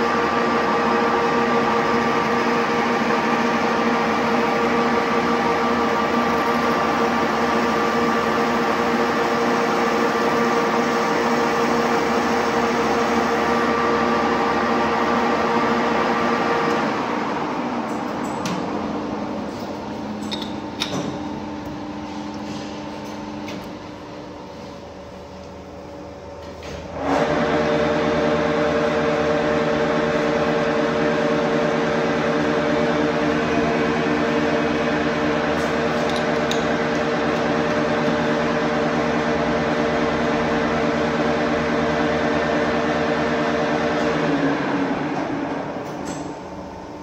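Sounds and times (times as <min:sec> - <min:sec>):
metal lathe running: 0:00.0 - 0:18.2.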